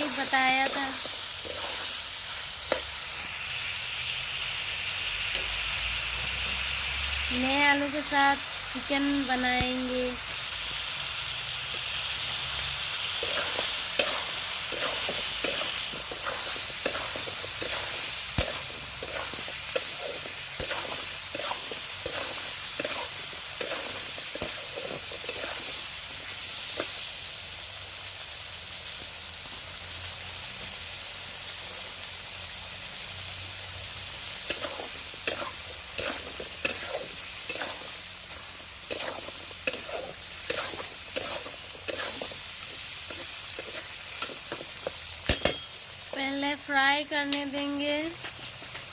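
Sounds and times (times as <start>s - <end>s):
spoon scraping a pan: 0.0s - 2.0s, 13.2s - 25.8s, 34.5s - 38.0s, 38.8s - 45.8s
chicken sizzling in hot oil: 0.0s - 48.9s.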